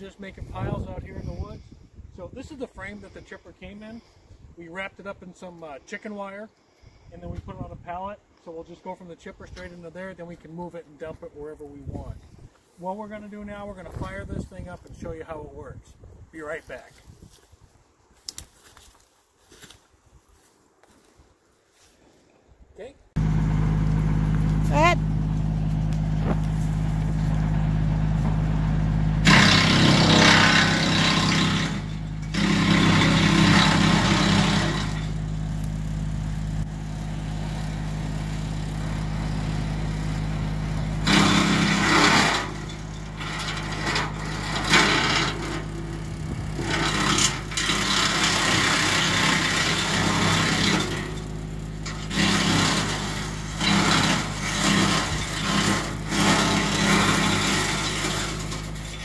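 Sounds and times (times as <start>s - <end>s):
wood chipper running: 23.2s - 59.0s.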